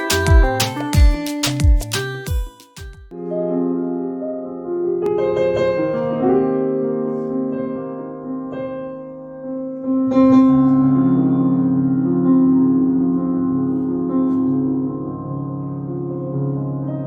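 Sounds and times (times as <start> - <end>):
piano playing slow chords: 0.0 - 17.0.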